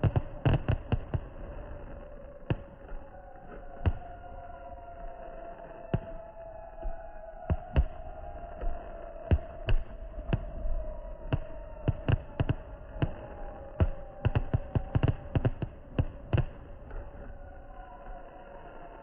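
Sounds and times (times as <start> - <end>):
fireworks bangs: 0.0 - 4.5, 9.3 - 17.3.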